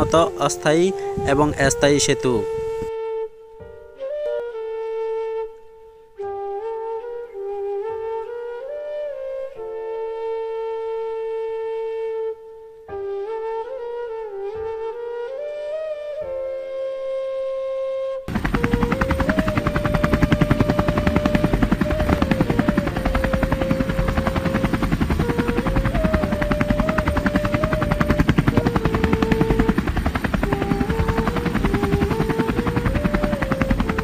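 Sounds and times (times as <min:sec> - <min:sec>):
flute-like melody: 0:00.0 - 0:34.0
fast chopping pulse: 0:18.3 - 0:34.0.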